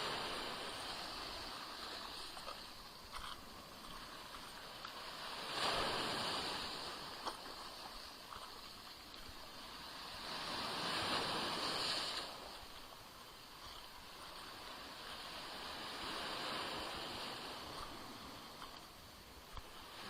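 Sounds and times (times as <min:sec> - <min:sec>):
small waves washing onto shore: 0:00.0 - 0:20.0.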